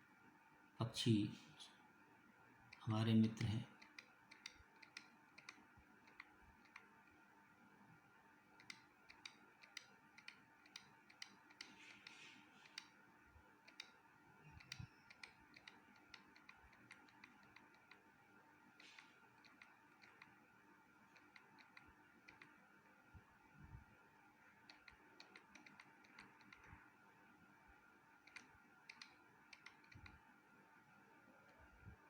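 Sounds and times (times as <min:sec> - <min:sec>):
low steady hum: 0:00.0 - 0:32.0
faint small clicks: 0:08.6 - 0:13.0, 0:13.6 - 0:18.0, 0:28.2 - 0:30.2.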